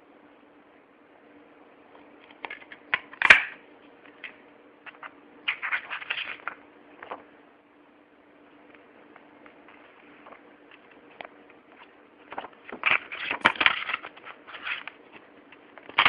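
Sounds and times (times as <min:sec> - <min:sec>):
faint steady hum: 0:00.0 - 0:16.0
rustling: 0:09.5 - 0:16.0.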